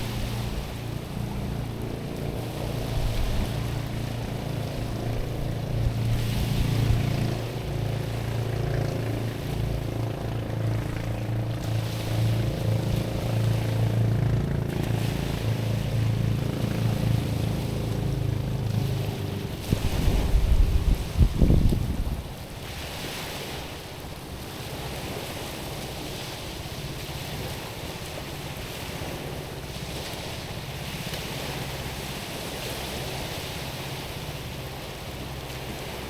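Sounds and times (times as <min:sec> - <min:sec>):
wind buffeting microphone: 0:00.0 - 0:22.7
boat engine droning: 0:00.0 - 0:36.0
waves washing over stones: 0:00.0 - 0:36.0.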